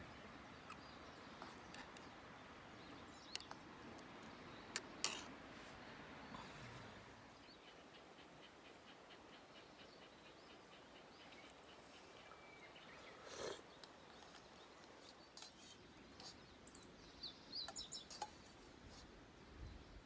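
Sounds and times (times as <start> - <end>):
faint bird chirps: 5.7 - 18.7.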